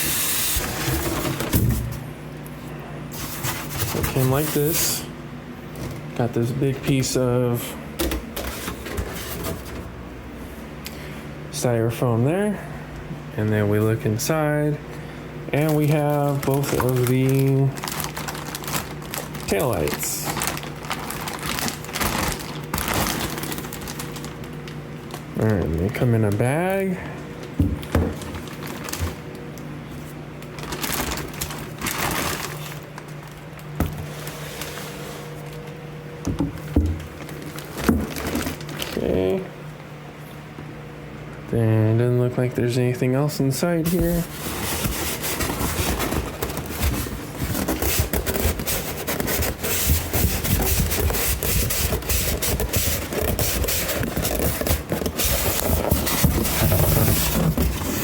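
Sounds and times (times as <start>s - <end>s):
cardboard box and styrofoam handling: 0.0s - 2.0s, 3.1s - 5.0s, 15.6s - 24.5s, 30.6s - 32.9s, 43.9s - 58.0s
faint steady hum: 0.0s - 58.0s
plastic bag rustling: 3.1s - 5.1s, 15.5s - 35.6s, 36.6s - 39.4s, 43.8s - 58.0s.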